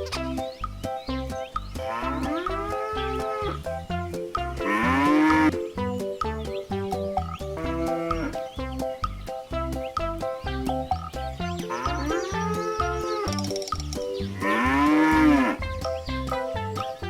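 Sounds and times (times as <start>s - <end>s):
music with plucked notes: 0.0s - 17.0s
cow mooing: 1.9s - 3.6s, 4.6s - 5.5s, 7.6s - 8.4s, 11.7s - 13.4s, 14.4s - 15.6s.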